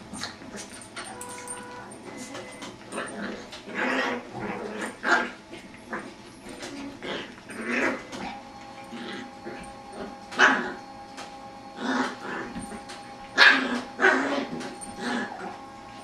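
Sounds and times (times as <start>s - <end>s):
puppy growling and yipping: 2.9s - 10.8s, 11.8s - 16.0s.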